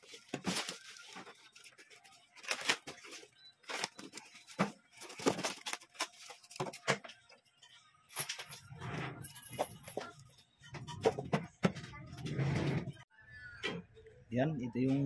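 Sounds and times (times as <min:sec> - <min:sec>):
packaging rustling and scraping: 0:00.0 - 0:07.4.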